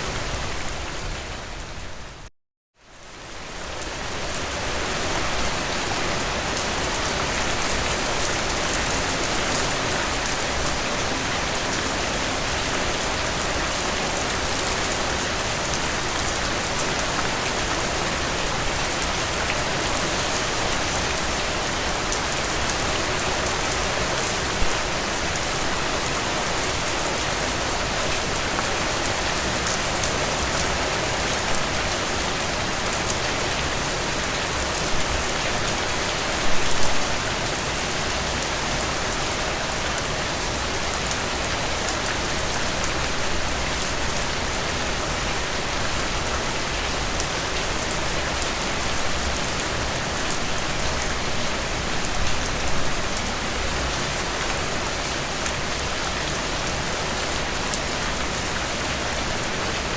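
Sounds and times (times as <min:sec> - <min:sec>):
heavy rain falling: 0:03.2 - 0:59.9.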